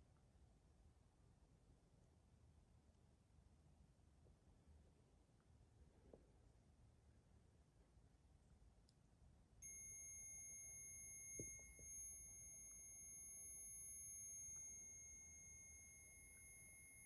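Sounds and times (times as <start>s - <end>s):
high-pitched electronic alarm tone: 9.6s - 17.0s.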